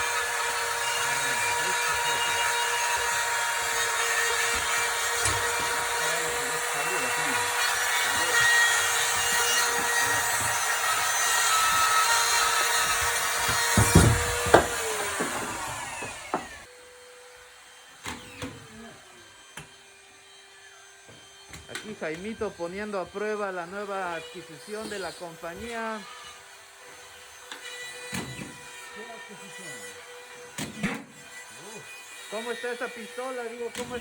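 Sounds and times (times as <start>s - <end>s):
power cutting tool whining: 0.0s - 34.0s.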